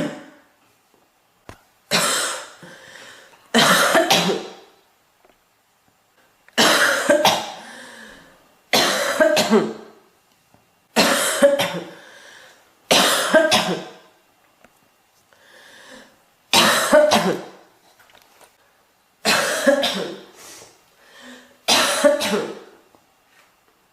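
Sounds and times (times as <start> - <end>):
girl coughing: 0.0 - 0.4, 1.9 - 2.6, 3.5 - 4.6, 6.6 - 7.6, 8.7 - 9.9, 11.0 - 12.0, 12.9 - 14.0, 16.5 - 17.6, 19.2 - 20.3, 21.7 - 22.7
faint breath: 2.6 - 3.4, 7.6 - 8.4, 11.9 - 12.7, 15.3 - 16.2, 20.4 - 21.6.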